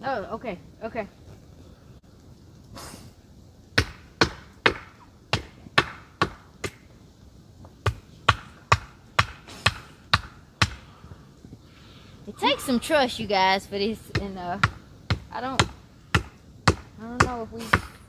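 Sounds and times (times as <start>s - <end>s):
hammer striking tent stake: 3.8s - 6.8s, 7.9s - 10.9s, 14.2s - 18.0s.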